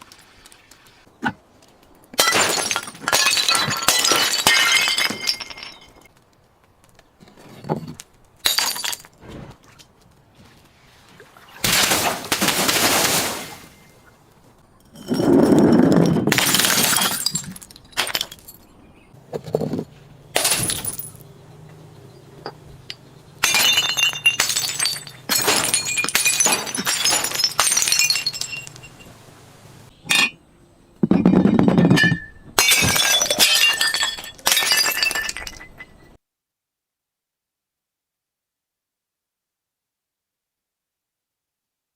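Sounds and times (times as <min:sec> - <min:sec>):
glass bottles smashing: 0:02.2 - 0:06.1, 0:08.4 - 0:09.1, 0:14.9 - 0:18.8, 0:20.4 - 0:21.2, 0:22.9 - 0:29.2, 0:31.2 - 0:36.2
glass shards tinkling: 0:22.9 - 0:29.1.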